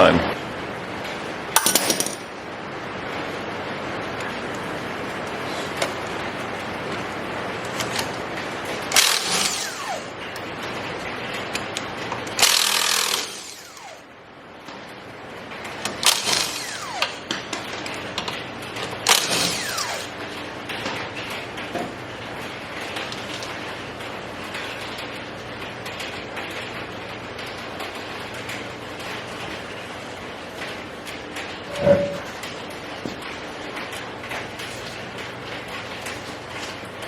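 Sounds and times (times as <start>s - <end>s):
ratchet clicking: 8.9s - 10.1s, 12.4s - 13.9s, 16.0s - 17.1s.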